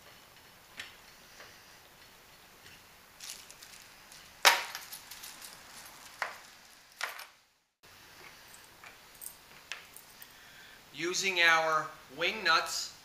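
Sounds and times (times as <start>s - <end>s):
metal hardware clinking on plate: 3.2s - 7.4s.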